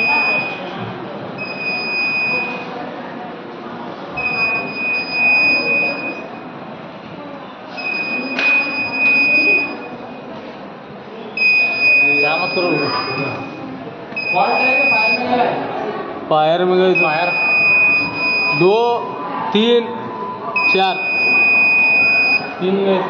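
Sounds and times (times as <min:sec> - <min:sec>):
fire alarm tone pulses: 0:00.0 - 0:00.7, 0:01.4 - 0:02.7, 0:04.2 - 0:06.5, 0:07.8 - 0:10.2, 0:11.4 - 0:13.6, 0:14.2 - 0:15.4, 0:16.9 - 0:19.4, 0:20.1 - 0:22.6
background murmur: 0:00.0 - 0:23.0.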